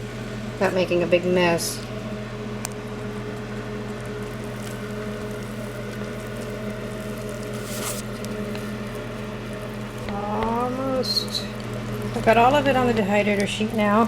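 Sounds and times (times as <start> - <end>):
steady electrical hum: 0.0 - 14.0
dough being poured onto sheet: 4.4 - 9.2.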